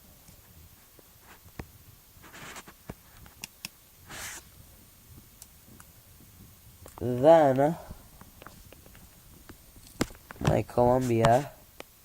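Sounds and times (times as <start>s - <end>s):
soft breath hisses: 4.0s - 6.6s, 7.3s - 9.8s.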